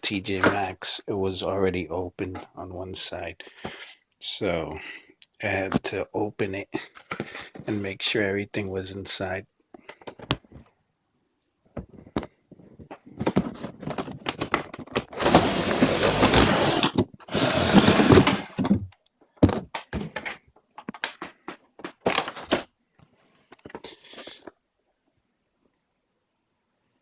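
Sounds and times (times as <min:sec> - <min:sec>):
cardboard rustling and scraping: 0:11.8 - 0:18.9.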